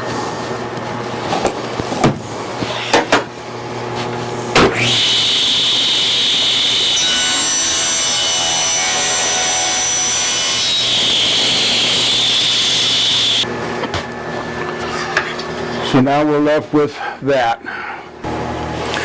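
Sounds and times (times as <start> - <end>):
power saw cutting board: 4.6 - 13.4.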